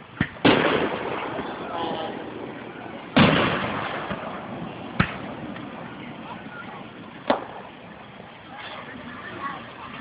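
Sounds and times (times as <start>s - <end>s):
fireworks sharp bangs: 0.0s - 6.6s
fireworks booming: 0.0s - 8.1s.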